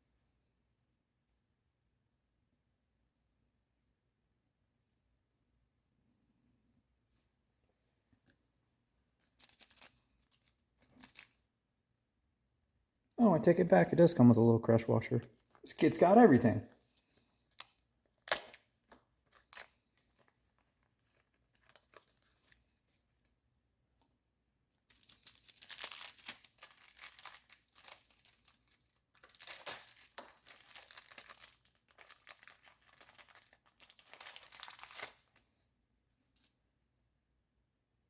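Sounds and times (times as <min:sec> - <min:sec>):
plastic packaging rustling: 0:09.2 - 0:11.4, 0:15.3 - 0:23.3, 0:24.8 - 0:35.5.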